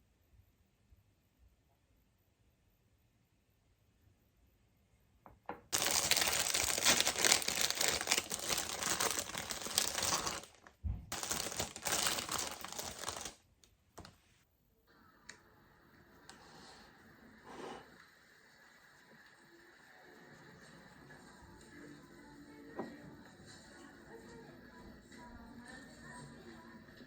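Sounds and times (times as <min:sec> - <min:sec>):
faint steady hum: 0:00.0 - 0:27.0
crinkling and rustling: 0:05.7 - 0:14.4.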